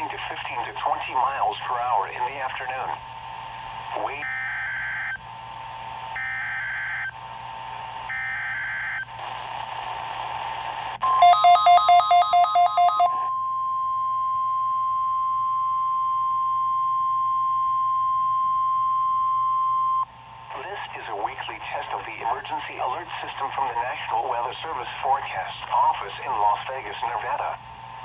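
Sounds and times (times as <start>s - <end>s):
steady warning alarm tone: 11.0s - 13.1s
loud electronic beeps: 11.2s - 13.1s.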